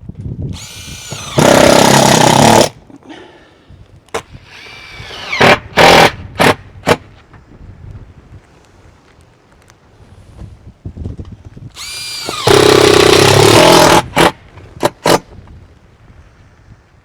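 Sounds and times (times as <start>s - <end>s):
power drill whining: 0.6s - 2.7s, 4.4s - 6.1s, 11.8s - 14.3s.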